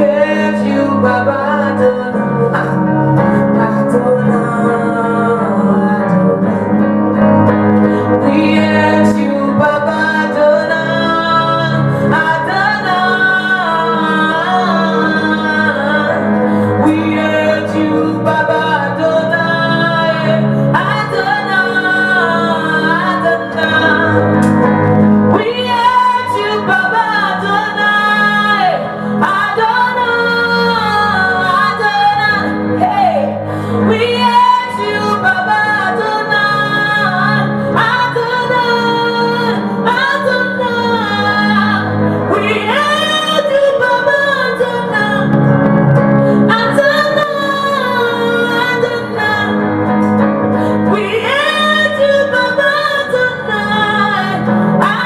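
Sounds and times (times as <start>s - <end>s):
sustained instrumental accompaniment: 0.0s - 55.0s
woman singing: 0.0s - 55.0s.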